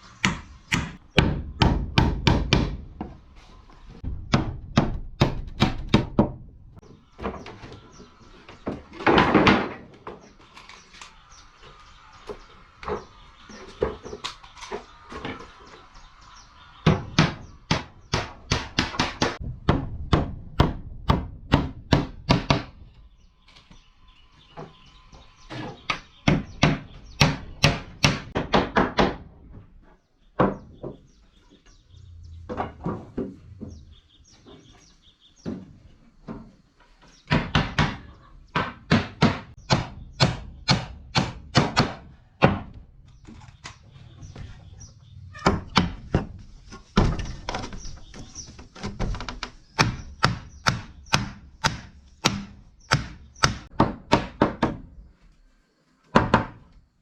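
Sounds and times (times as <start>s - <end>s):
tool striking wood: 0.2s - 3.1s, 4.3s - 6.4s, 38.6s - 42.8s, 49.8s - 54.8s.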